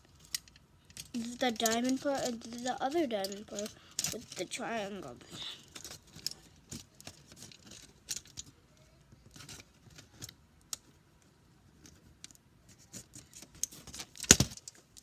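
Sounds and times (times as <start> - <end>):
paper craft rustling and tapping: 1.0 - 8.5.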